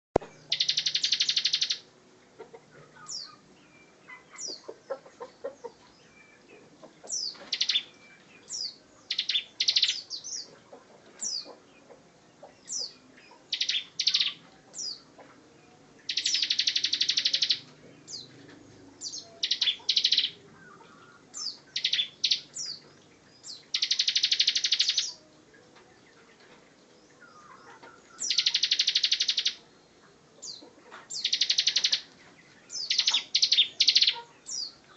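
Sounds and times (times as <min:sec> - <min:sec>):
bird high chirps and sweeping notes: 0:07.2 - 0:10.1, 0:16.1 - 0:17.7, 0:23.7 - 0:25.2, 0:27.3 - 0:29.6, 0:31.2 - 0:32.1, 0:32.7 - 0:34.7.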